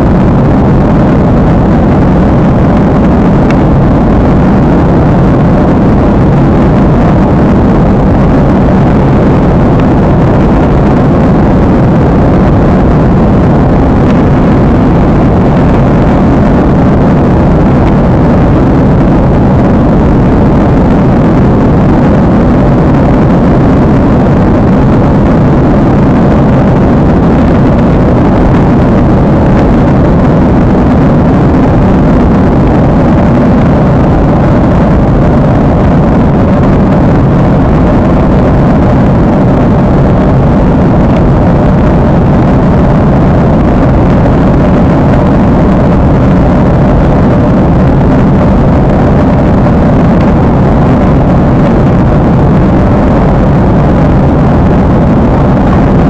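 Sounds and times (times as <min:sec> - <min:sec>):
airliner cabin engine noise: 0:00.0 - 0:56.0.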